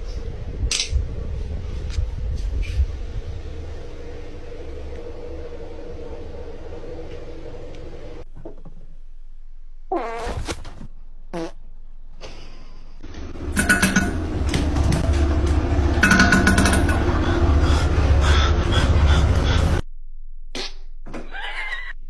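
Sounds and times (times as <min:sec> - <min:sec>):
loud rumbling noise: 0:00.0 - 0:08.2, 0:13.2 - 0:19.8
background hum: 0:00.0 - 0:22.0
farts: 0:09.9 - 0:10.6, 0:11.3 - 0:11.6.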